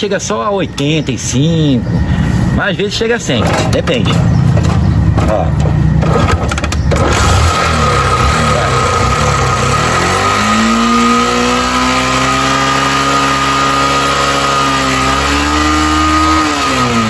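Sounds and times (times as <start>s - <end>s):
steady high whine: 0.0s - 15.6s
motorcycle engine revving: 3.6s - 17.0s.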